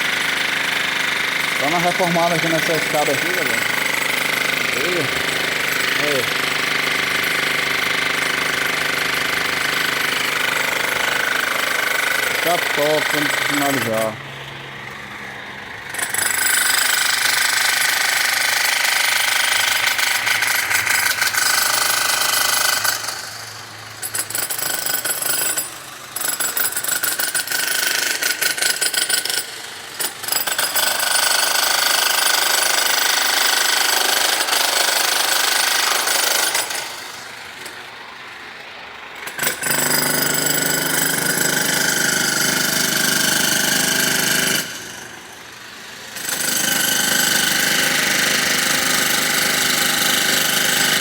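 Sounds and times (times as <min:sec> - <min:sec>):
demolition hammer chipping: 0:00.0 - 0:14.2, 0:15.9 - 0:23.3, 0:24.0 - 0:37.8, 0:39.2 - 0:51.0.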